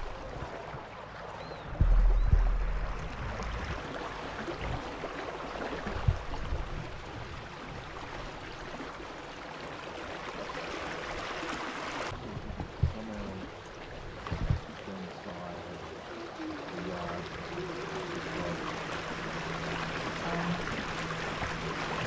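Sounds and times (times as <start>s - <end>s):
water rushing and gurgling: 0.0s - 22.0s
low thumps: 1.7s - 3.8s.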